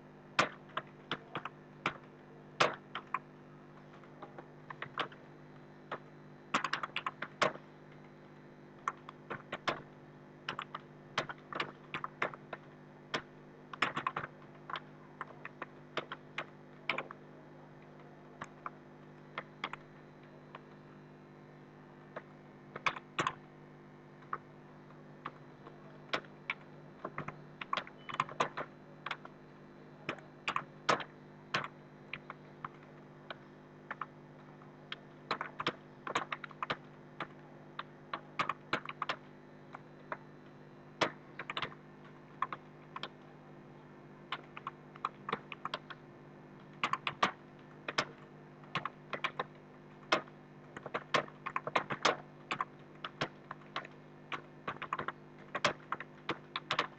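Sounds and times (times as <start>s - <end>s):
low steady hum: 0.0s - 56.9s.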